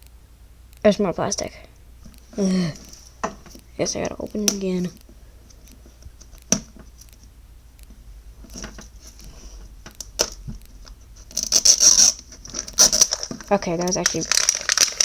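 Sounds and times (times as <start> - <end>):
plastic packaging crinkling and tearing: 11.3 - 15.0.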